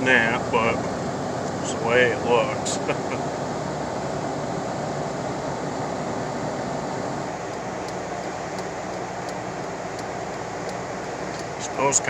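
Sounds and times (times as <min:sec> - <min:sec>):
car cabin road and engine noise: 0:00.0 - 0:12.0
faint regular ticks: 0:07.5 - 0:11.6.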